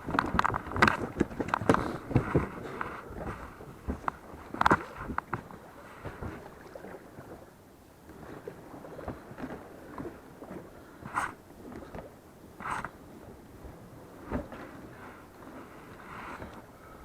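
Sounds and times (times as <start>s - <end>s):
oars knocking against boat: 0.0s - 7.4s
oars dipping in water: 0.0s - 17.0s.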